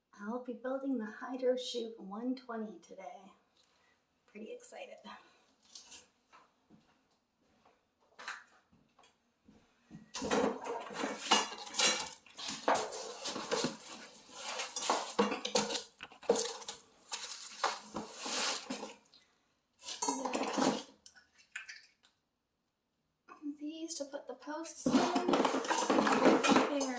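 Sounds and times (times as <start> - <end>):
metal poles clattering: 10.2 - 18.1, 24.9 - 26.9.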